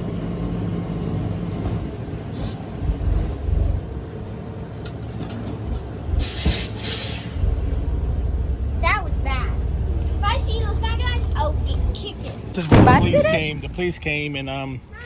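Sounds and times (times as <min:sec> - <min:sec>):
motor vehicle engine rumble: 0:00.0 - 0:15.0.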